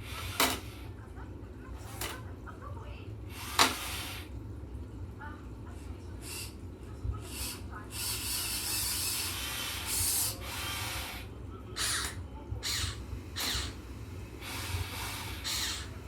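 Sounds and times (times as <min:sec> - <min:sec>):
electric motors whirring in bursts: 0:03.3 - 0:04.3, 0:07.3 - 0:16.0.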